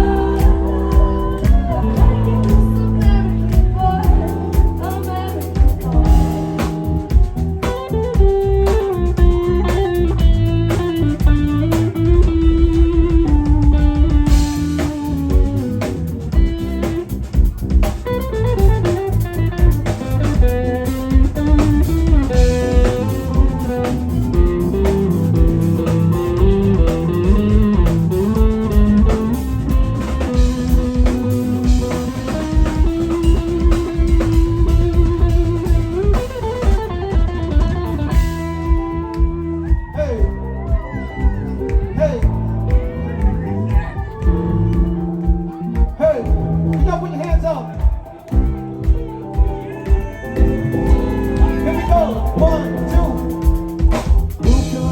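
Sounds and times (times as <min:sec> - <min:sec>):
bass guitar: 0:00.0 - 0:54.9
drum kit beat: 0:00.0 - 0:54.9
electric guitar: 0:00.0 - 0:54.9.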